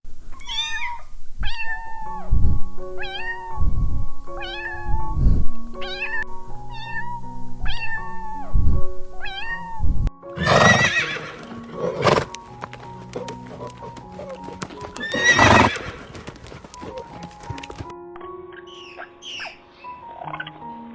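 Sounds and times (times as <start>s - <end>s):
cat meowing: 0.3s - 2.3s, 3.0s - 3.6s, 4.4s - 5.2s, 5.8s - 8.6s, 9.2s - 11.4s.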